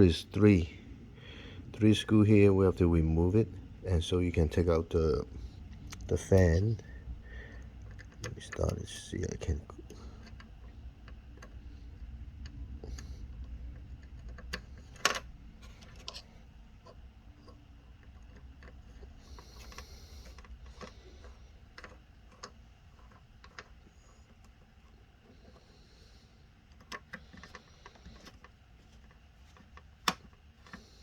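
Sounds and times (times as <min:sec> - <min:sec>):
low steady hum: 0:00.0 - 0:31.0.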